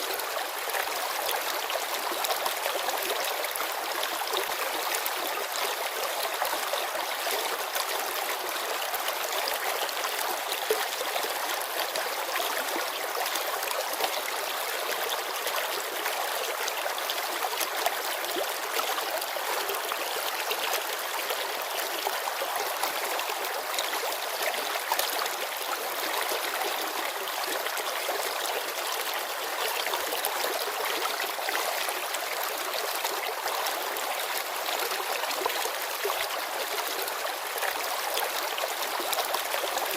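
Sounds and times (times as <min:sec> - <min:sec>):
river babbling over stones: 0:00.0 - 0:39.9.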